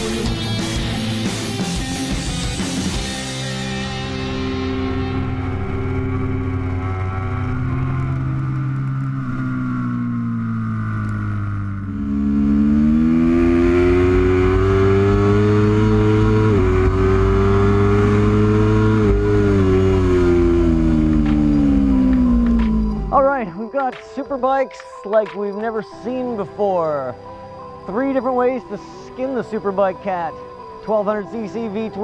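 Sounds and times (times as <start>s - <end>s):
motorcycle engine revving: 0.0s - 23.4s.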